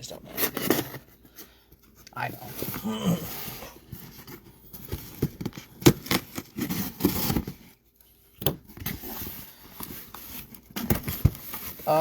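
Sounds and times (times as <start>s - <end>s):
cardboard box scraping and rustling: 2.4s - 7.7s.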